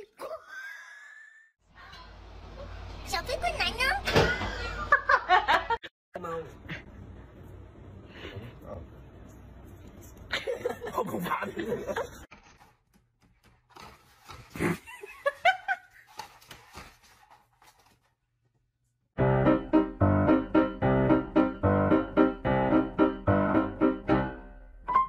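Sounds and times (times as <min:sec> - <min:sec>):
piano-like keyboard music: 0:19.2 - 0:25.0.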